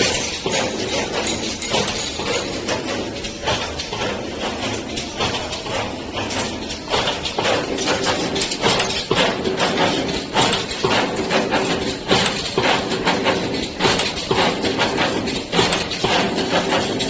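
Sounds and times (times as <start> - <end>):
metallic clacks and knocks: 0.0 - 17.0.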